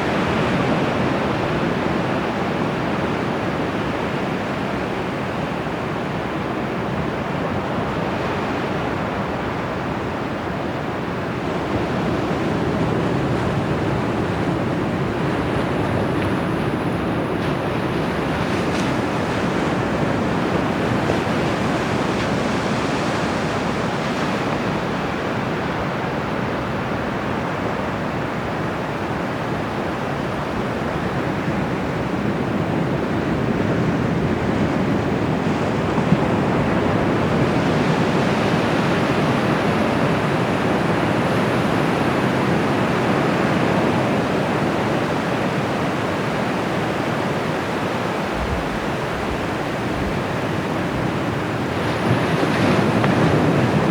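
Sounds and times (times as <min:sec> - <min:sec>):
surf breaking on shore: 0:33.1 - 0:53.9.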